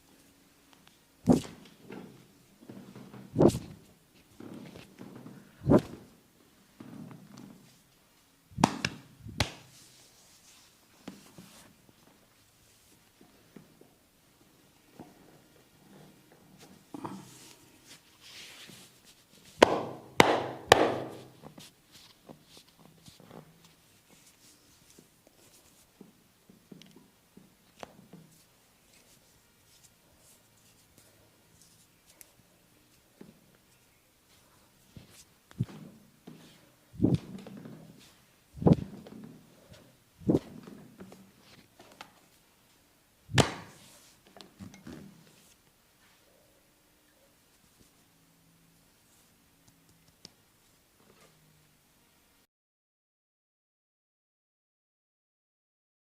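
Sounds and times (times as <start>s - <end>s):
hands rubbing skin and hair: 1.3s - 1.7s, 3.3s - 4.9s, 5.6s - 6.1s, 8.6s - 11.8s, 16.6s - 20.0s, 20.8s - 26.0s, 27.7s - 42.4s, 43.3s - 44.3s
massage strikes on the body: 3.4s - 3.7s, 8.6s - 9.8s, 19.5s - 21.4s, 43.3s - 44.0s.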